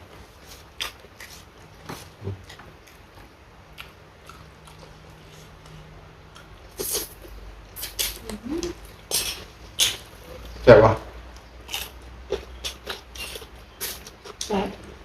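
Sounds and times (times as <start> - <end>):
person chewing and biting food: 0.4 - 10.6, 11.3 - 14.5.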